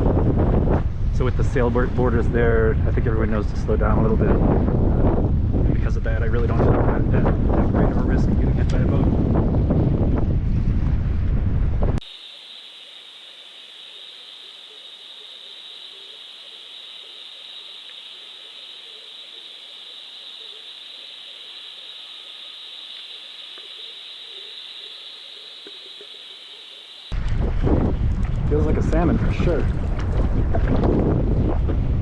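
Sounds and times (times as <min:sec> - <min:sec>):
camera housing hiss: 0:12.0 - 0:27.1
faint low blips: 0:12.0 - 0:27.2
small ticks: 0:12.0 - 0:27.2.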